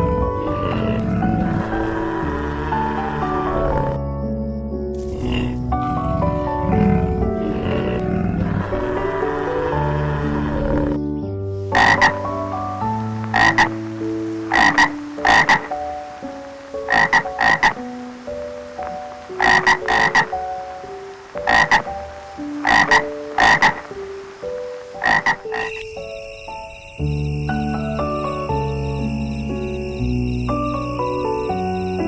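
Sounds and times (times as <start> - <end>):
soft background music: 0.0 - 32.0
animal giving sharp calls: 0.4 - 4.0, 5.0 - 11.0, 11.8 - 12.2, 19.4 - 20.3.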